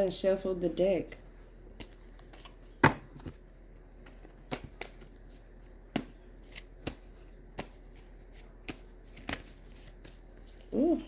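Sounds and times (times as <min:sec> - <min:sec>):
cards slapping and flicking: 0:03.9 - 0:10.6.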